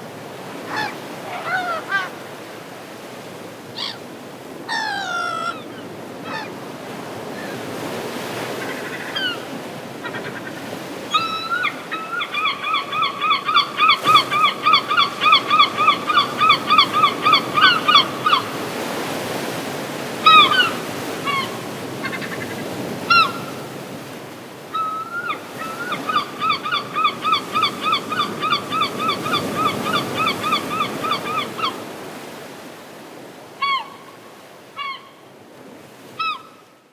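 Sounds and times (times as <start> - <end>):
gulls squawking: 0.7 - 2.2, 4.7 - 6.6, 8.4 - 18.9, 20.2 - 23.7, 24.7 - 31.8.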